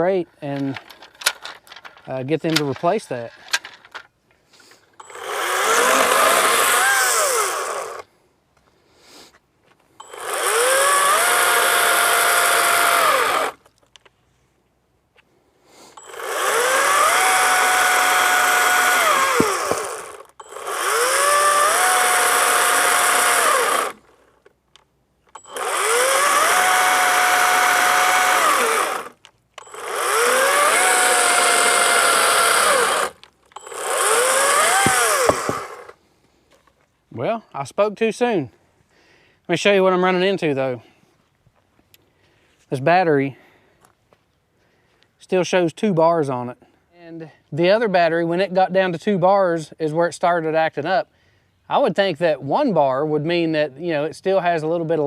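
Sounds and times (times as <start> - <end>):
cordless chainsaw cutting logs: 5.0 - 8.1, 10.0 - 13.7, 15.9 - 24.5, 25.3 - 36.0.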